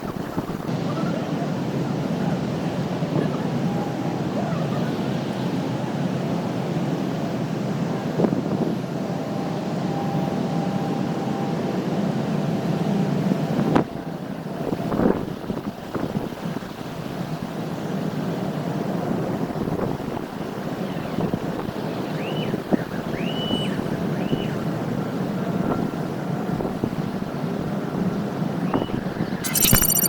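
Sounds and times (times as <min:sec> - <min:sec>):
sharp click: 0:29.4 - 0:30.0.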